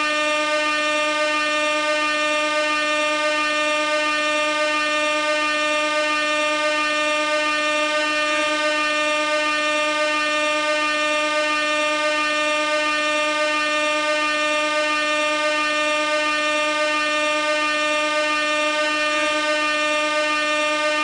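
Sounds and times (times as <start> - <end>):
air horn blaring: 0.0 - 21.0.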